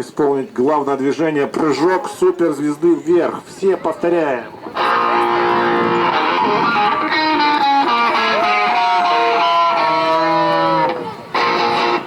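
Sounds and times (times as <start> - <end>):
electric guitar playing: 4.7 - 12.0.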